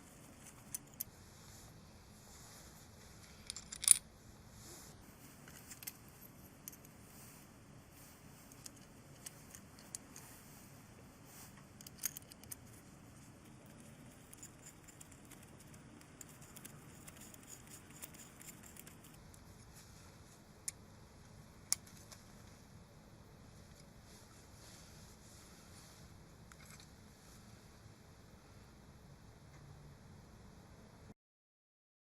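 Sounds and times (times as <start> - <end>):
faint clicks and metallic clinks: 0.0 - 1.1, 3.0 - 4.1, 5.2 - 22.6.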